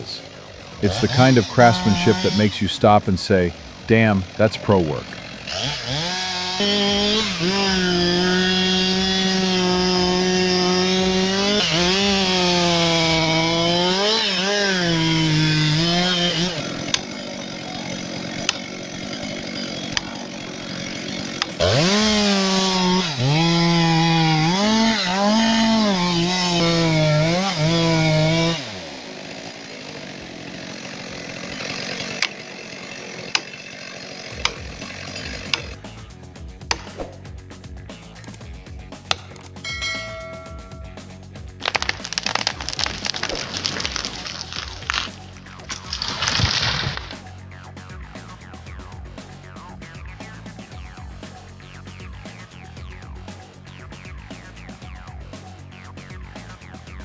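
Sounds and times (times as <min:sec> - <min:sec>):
chainsaw cutting a tree: 0:00.0 - 0:57.0
sharp clicks: 0:31.2 - 0:32.5, 0:34.3 - 0:37.2, 0:38.0 - 0:47.4.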